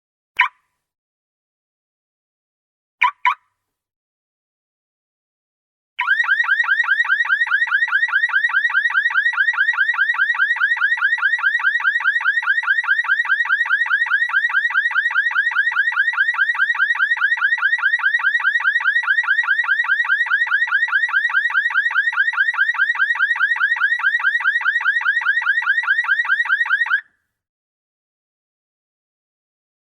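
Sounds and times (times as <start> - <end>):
warbling electronic alarm: 6.0 - 27.0.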